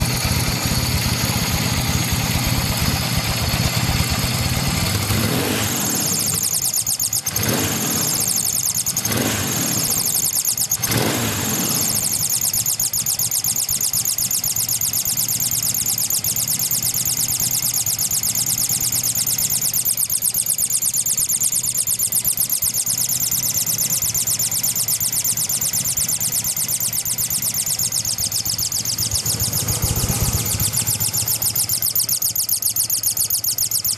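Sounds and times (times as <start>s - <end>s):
twin engine idling and revving: 0.0s - 33.9s.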